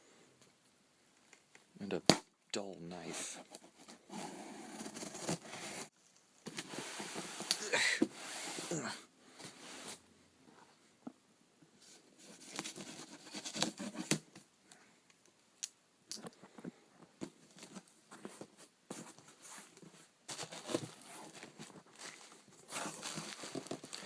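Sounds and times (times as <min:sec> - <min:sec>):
knife cutting cardboard box: 0:04.1 - 0:05.9.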